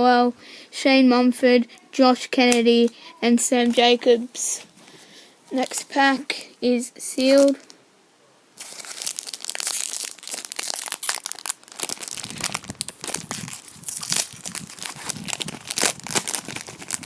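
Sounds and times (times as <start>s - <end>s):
wrapper tearing and crinkling: 7.2s - 7.8s, 8.6s - 17.0s.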